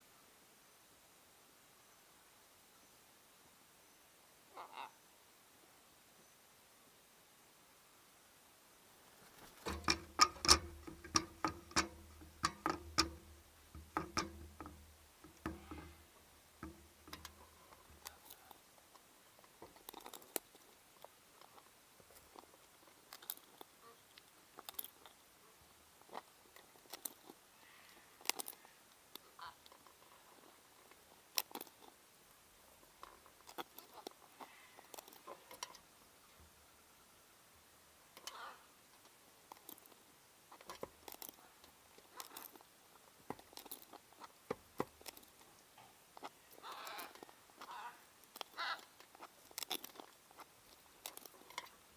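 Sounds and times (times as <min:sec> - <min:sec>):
parrots cracking food with beaks: 0:09.4 - 0:25.2, 0:26.0 - 0:30.1, 0:31.3 - 0:31.9, 0:33.0 - 0:35.8, 0:39.5 - 0:42.7, 0:43.3 - 0:45.5, 0:46.2 - 0:51.8.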